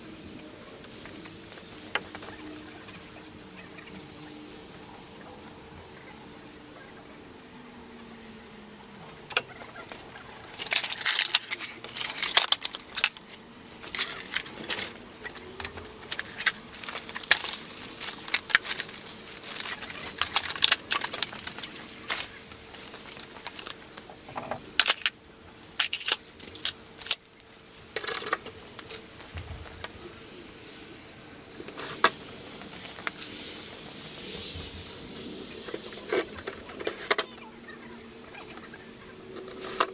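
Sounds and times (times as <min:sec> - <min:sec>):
faint steady hum: 0:00.0 - 0:39.9
metal tool parts clicking and clinking: 0:10.4 - 0:29.0.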